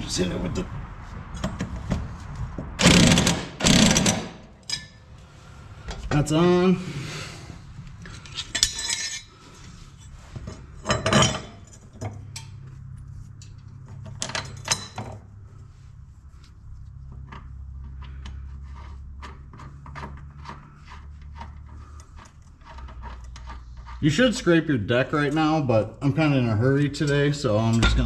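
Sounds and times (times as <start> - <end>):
low steady hum: 4.4 - 28.0
metal tools clinking: 4.6 - 5.0, 8.0 - 9.3, 14.2 - 15.2.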